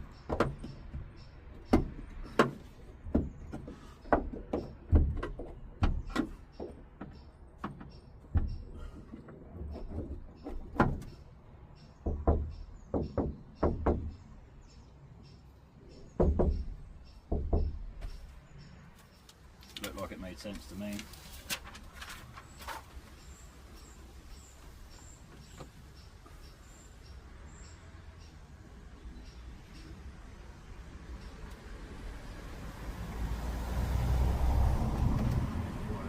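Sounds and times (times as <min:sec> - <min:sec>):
knocks on sheet-metal roof: 0:01.7 - 0:08.6, 0:12.0 - 0:14.2, 0:16.2 - 0:18.1.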